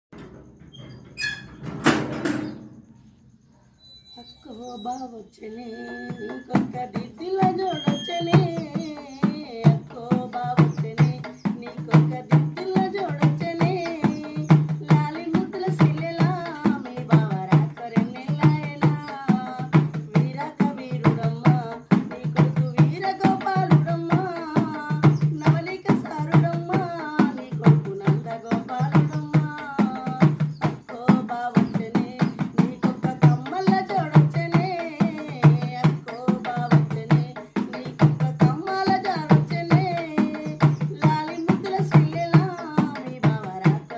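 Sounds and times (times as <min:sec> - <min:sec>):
steady drum beat: 0:06.6 - 0:43.9.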